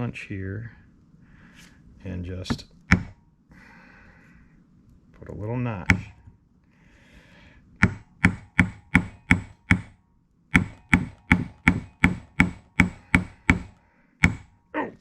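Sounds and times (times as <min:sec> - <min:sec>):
hammer tapping metal punch: 0:02.5 - 0:03.2, 0:05.8 - 0:06.3, 0:07.8 - 0:14.6.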